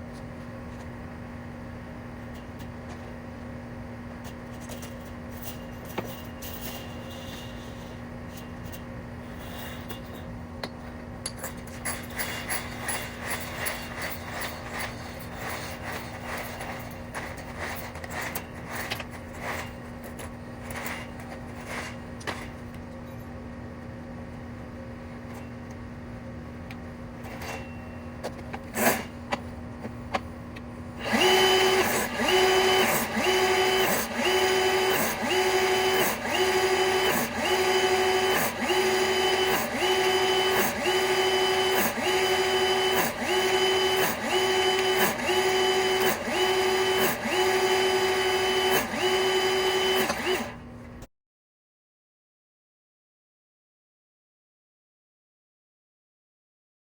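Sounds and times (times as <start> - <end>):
power tool humming: 31.0 - 50.7
pulsing motor whine: 31.0 - 50.7.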